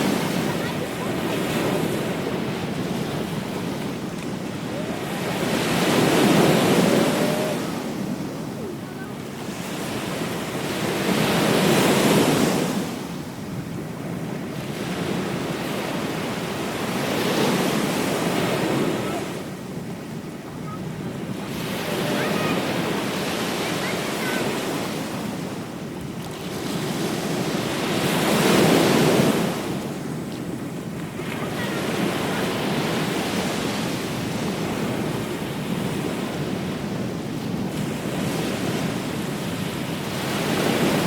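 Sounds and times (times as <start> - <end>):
ocean surf breaking on beach: 0.0 - 41.0.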